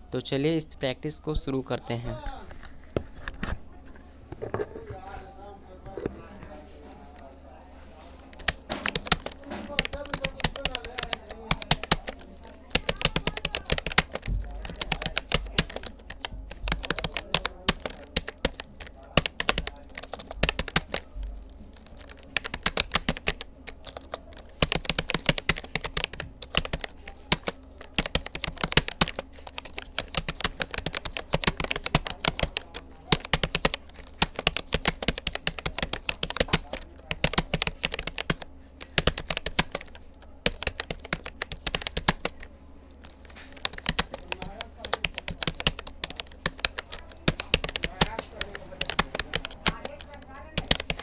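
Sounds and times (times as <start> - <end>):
keyboard typing clicks: 8.2 - 51.0.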